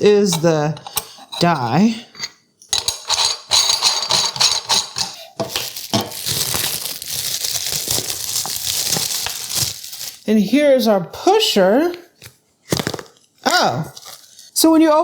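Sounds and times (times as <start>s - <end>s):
metal parts knocking and clicking: 2.8s - 6.1s
plastic packaging crinkling: 5.4s - 10.6s, 12.2s - 14.6s.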